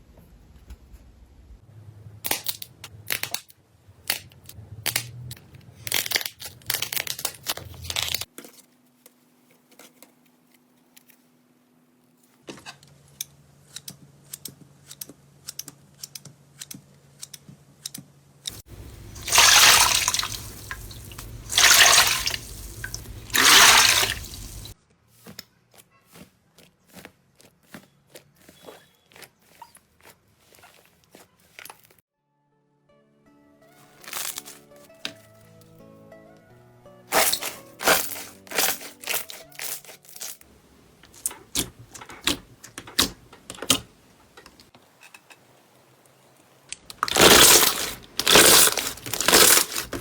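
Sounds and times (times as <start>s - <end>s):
slime squelching: 18.5s - 24.8s, 46.9s - 50.0s.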